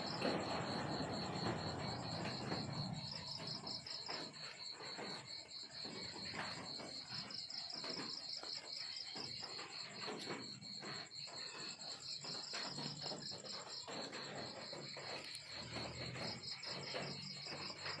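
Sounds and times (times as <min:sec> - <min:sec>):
crickets chirping: 0:00.0 - 0:18.0.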